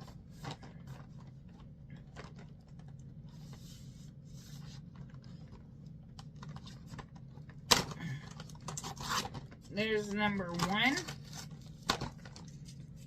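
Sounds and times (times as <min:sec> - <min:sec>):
cardboard tearing: 0:08.7 - 0:09.4.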